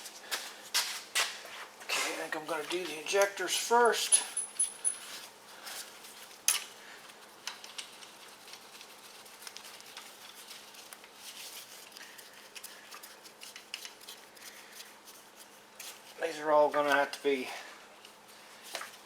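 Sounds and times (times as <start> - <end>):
small metal parts clinking: 3.2 - 5.2.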